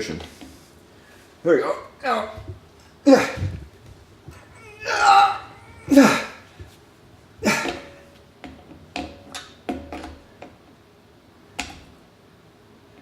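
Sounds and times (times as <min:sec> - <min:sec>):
person grunting: 0:04.5 - 0:06.4.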